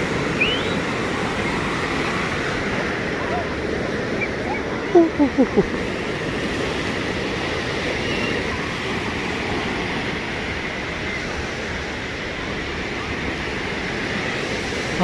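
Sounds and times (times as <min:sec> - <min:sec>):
ocean surf rushing: 0:00.0 - 0:15.0.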